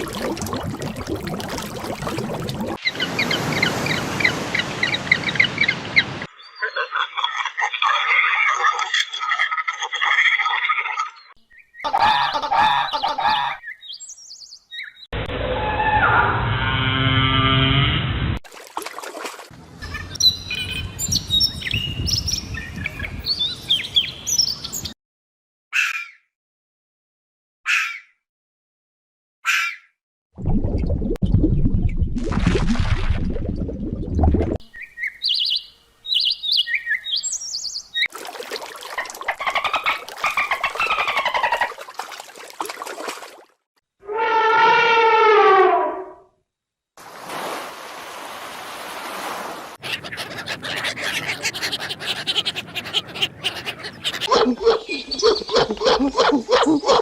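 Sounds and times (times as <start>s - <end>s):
birds calling: 2.8s - 7.5s, 11.2s - 15.1s, 34.6s - 38.1s, 38.8s - 41.8s, 49.8s - 57.0s.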